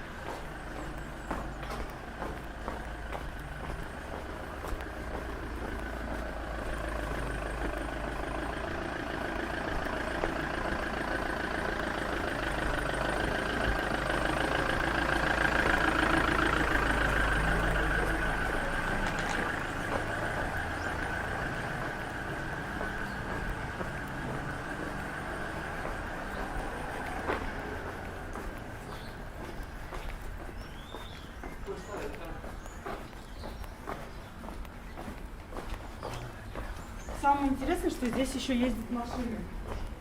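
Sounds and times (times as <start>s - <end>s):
vehicle engine passing by: 0.0s - 33.1s.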